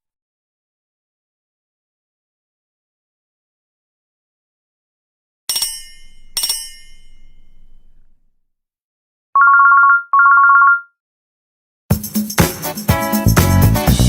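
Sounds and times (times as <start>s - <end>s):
pulsing two-note electronic ring: 5.5s - 8.2s.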